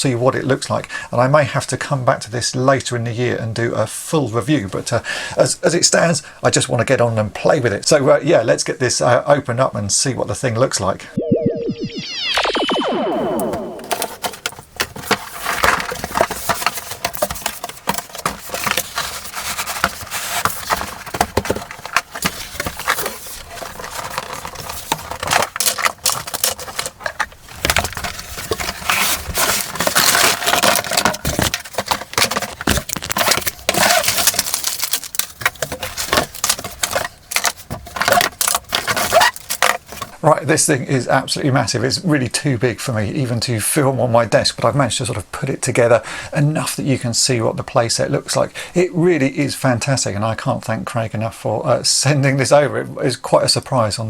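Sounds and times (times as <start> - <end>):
plastic packaging crinkling: 13.4 - 40.2
plastic toy parts clicking: 13.9 - 40.2.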